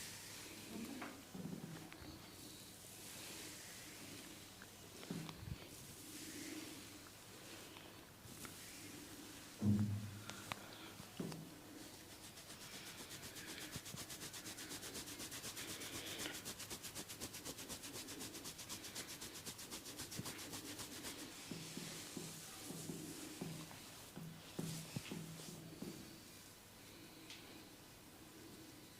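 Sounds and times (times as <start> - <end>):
fingers scratching hair: 11.9 - 21.4.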